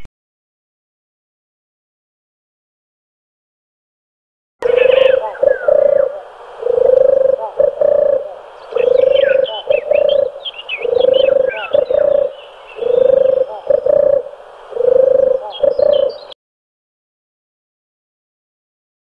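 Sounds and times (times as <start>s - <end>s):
dove cooing: 4.6s - 16.4s
small birds chirping: 4.6s - 16.4s.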